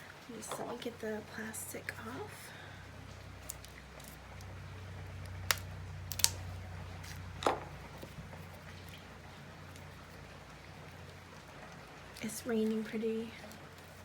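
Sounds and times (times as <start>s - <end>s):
low steady hum: 0.0s - 14.0s
plastic wrapping crackling: 3.1s - 14.0s.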